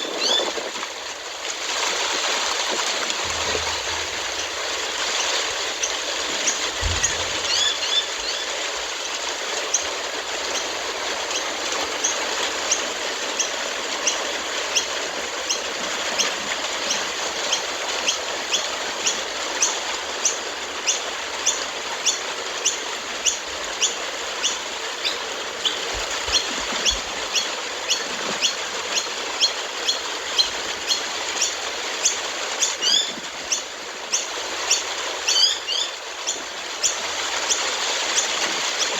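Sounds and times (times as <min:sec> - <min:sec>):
rain and wind hiss: 0:00.0 - 0:13.3.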